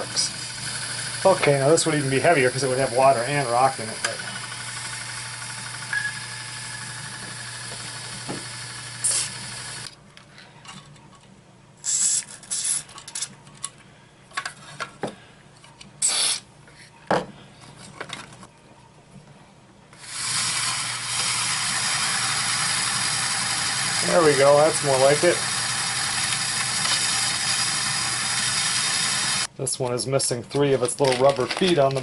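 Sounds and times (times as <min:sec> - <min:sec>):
rock tumbler humming: 0:00.0 - 0:09.9, 0:20.1 - 0:29.5
knocks and clatter of handling: 0:17.1 - 0:18.5, 0:30.8 - 0:32.0.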